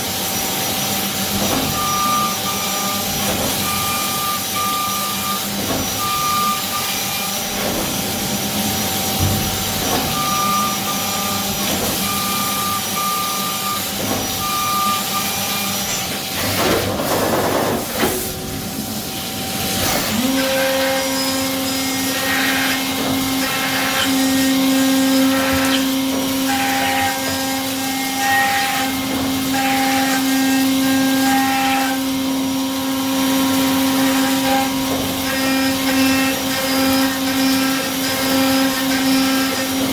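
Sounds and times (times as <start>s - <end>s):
milling machine spindle tone: 1.6s - 16.6s, 19.1s - 39.9s
machine cutting passes: 19.6s - 31.4s.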